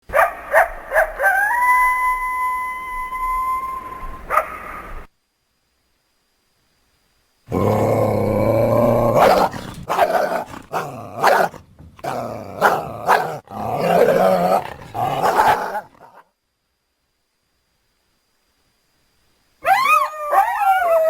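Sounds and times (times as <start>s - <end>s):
drawn-out growl-like animal call: 7.5s - 16.2s.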